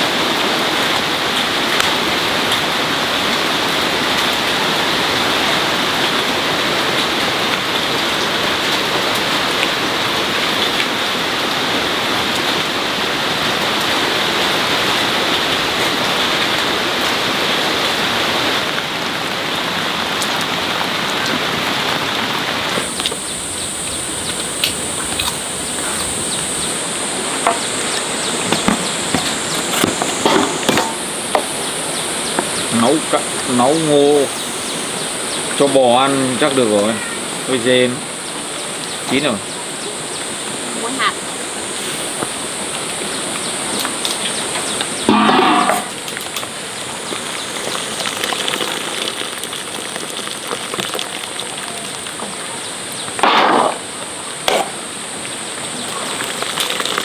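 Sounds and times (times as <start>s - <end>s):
rain falling: 0.0s - 57.0s
high-pitched whine: 41.5s - 46.2s.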